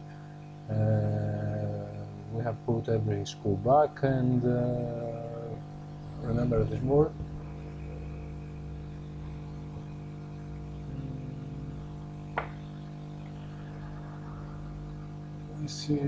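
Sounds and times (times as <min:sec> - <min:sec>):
steady electrical hum: 0:00.0 - 0:16.0.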